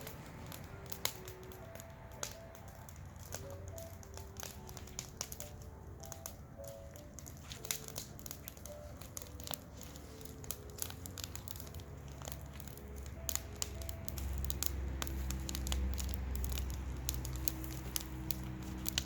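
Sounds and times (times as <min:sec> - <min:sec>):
wood fire crackling and popping: 0:00.0 - 0:19.0
low steady rumble: 0:08.1 - 0:19.0.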